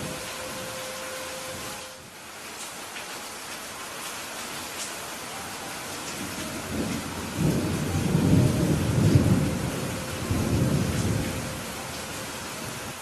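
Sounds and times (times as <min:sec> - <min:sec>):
steady rain hissing: 0:00.0 - 0:13.0
thunder rolling: 0:06.2 - 0:13.0.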